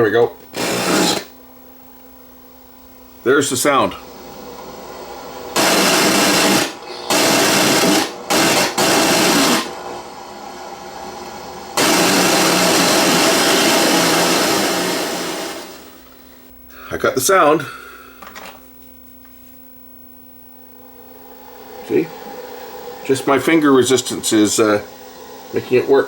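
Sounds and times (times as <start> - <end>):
tape audio bursts: 5.5 - 10.0, 11.8 - 15.4.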